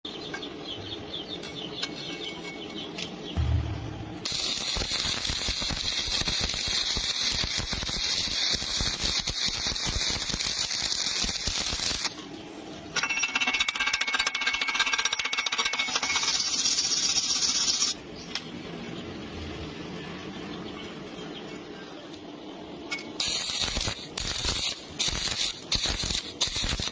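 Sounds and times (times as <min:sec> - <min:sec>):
welding arc crackling: 0:04.2 - 0:12.2, 0:16.2 - 0:18.0, 0:23.2 - 0:26.9.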